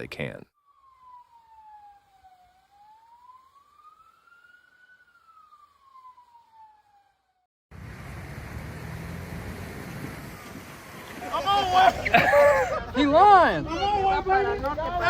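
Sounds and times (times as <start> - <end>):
faint wailing siren: 0.5 - 7.5.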